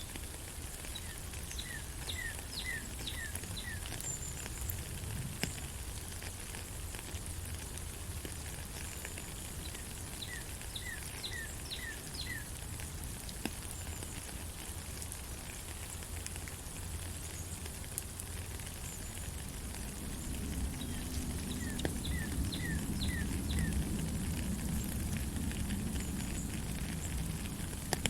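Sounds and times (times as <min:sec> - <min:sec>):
rain falling in forest: 0:00.0 - 0:28.0
sharp water drips: 0:00.0 - 0:28.0
bird chirping: 0:01.0 - 0:03.9, 0:10.2 - 0:12.5, 0:20.8 - 0:23.8.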